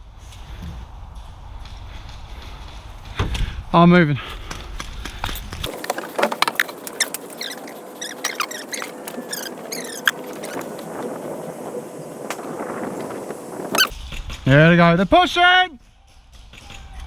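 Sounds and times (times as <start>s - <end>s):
high squeaky chirps: 5.7s - 13.9s.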